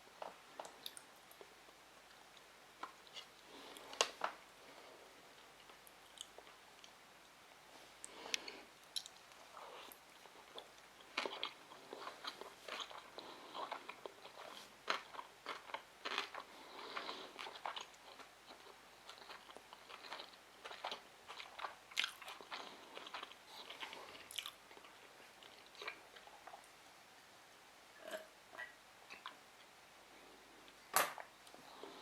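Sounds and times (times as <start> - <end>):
person chewing wetly: 5.4 - 7.0, 8.3 - 26.6.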